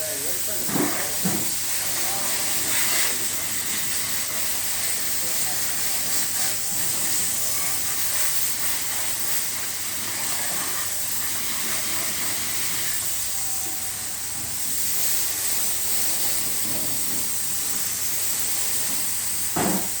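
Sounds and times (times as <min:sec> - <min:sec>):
high-pressure water jet spraying: 0:00.0 - 0:20.0.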